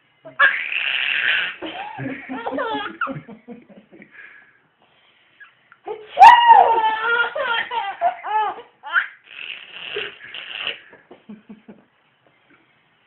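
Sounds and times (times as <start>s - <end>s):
baby laughing: 0.3s - 3.2s, 6.6s - 10.8s.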